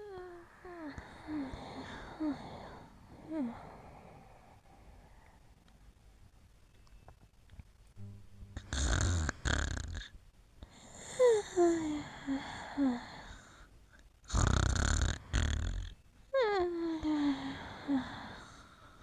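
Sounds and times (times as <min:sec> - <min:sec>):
person snoring: 0:00.0 - 0:04.9, 0:08.6 - 0:10.1, 0:14.3 - 0:16.0.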